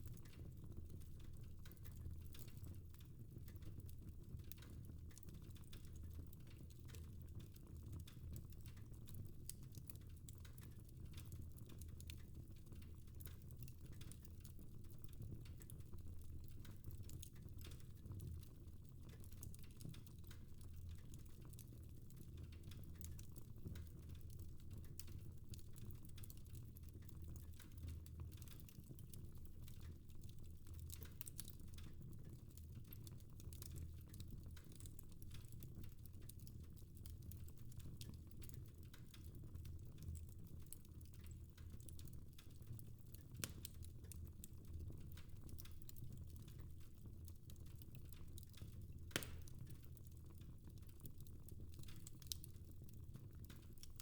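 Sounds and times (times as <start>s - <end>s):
fire crackling: 43.1s - 54.0s.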